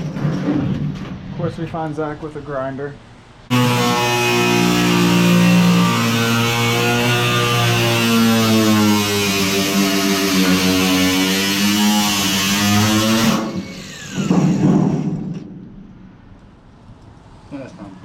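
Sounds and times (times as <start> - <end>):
angle grinder whining: 3.5 - 14.6.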